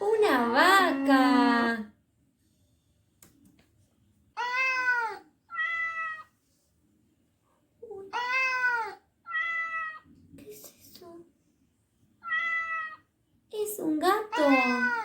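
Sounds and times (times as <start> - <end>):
cat meowing: 0.4 - 1.4, 4.4 - 6.3, 8.1 - 10.1, 12.2 - 13.1, 14.4 - 15.0.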